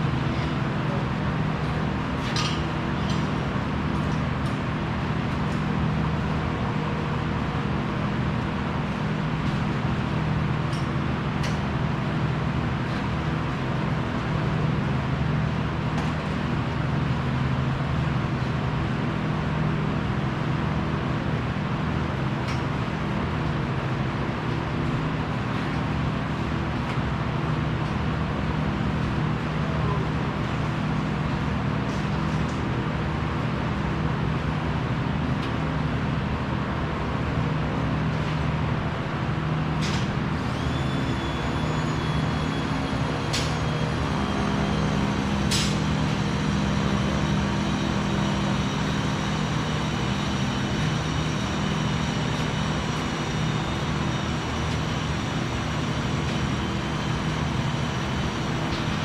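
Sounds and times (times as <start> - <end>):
machinery humming: 39.4 - 59.0.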